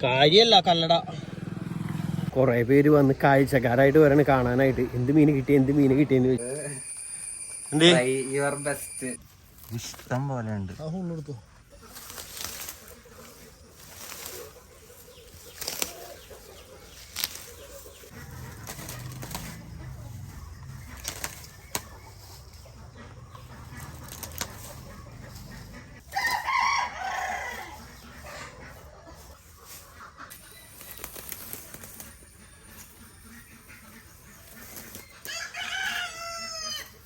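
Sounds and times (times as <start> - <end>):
rooster crowing: 26.1 - 27.8, 35.2 - 37.0.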